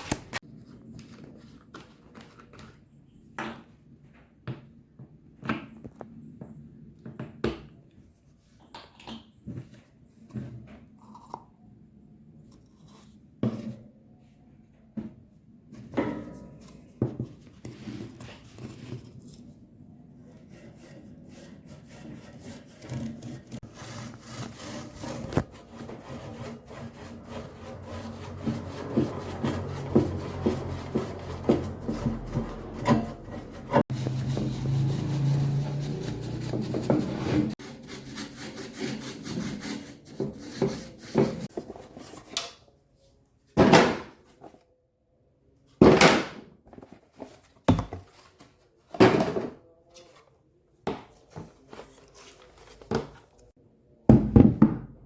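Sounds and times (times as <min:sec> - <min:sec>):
hand tool scraping wood: 0:20.4 - 0:41.5.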